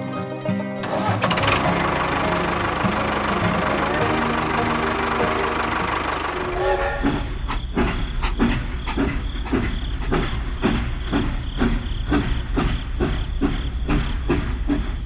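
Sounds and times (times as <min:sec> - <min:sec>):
rhythmic mechanical chugging: 0:00.8 - 0:15.0
steady pitched tone: 0:04.0 - 0:07.4.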